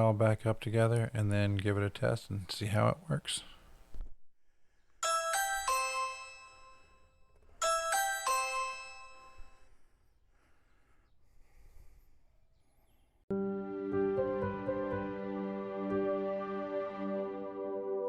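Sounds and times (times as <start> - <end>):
doorbell chime: 5.0 - 9.7.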